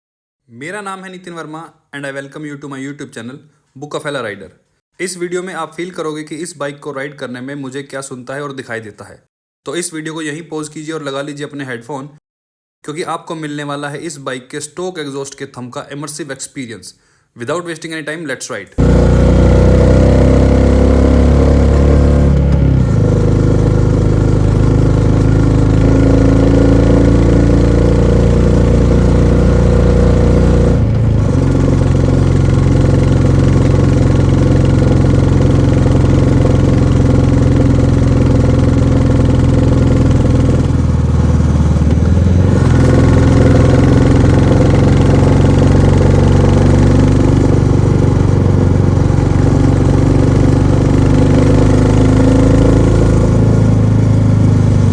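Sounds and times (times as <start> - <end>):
motorcycle engine thumping: 18.8 - 54.9.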